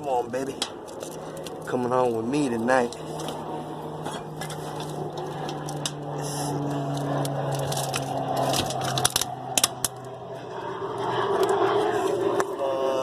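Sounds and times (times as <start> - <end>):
steady low hum: 0.0 - 13.0
trash crunching and clattering: 6.8 - 9.7.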